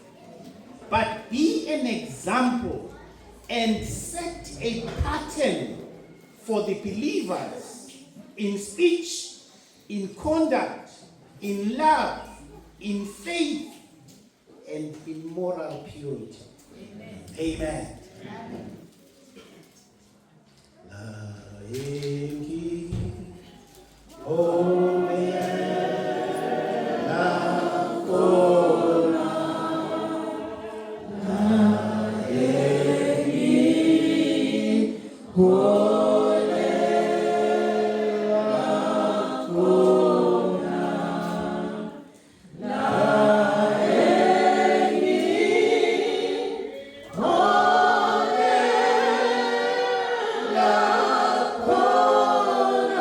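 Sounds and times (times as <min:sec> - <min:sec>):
congregation singing gospel: 0:00.0 - 0:13.9, 0:20.9 - 0:53.0.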